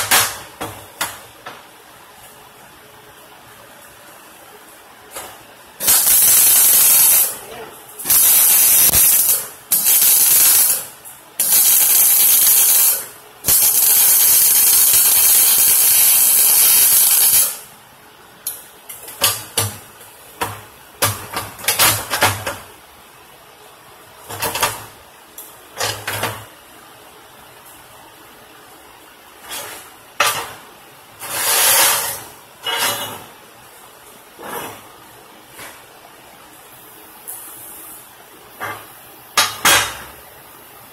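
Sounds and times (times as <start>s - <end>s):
welding arc crackling and hissing: 5.8s - 17.7s, 31.1s - 33.1s.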